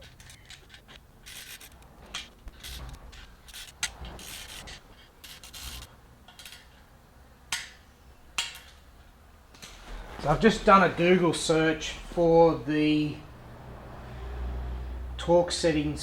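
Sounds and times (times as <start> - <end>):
tools and parts clicking: 0.0 - 6.8, 8.4 - 8.8
tools scraping: 0.0 - 6.8.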